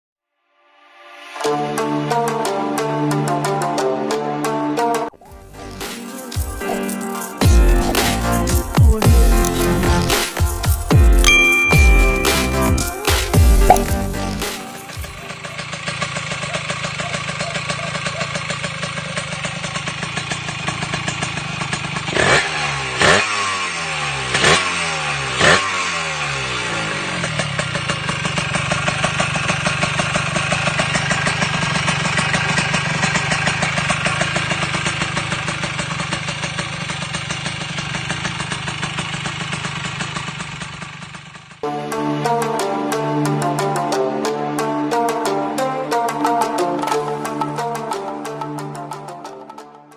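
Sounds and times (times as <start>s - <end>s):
two-stroke engine idling and revving: 13.4s - 41.6s.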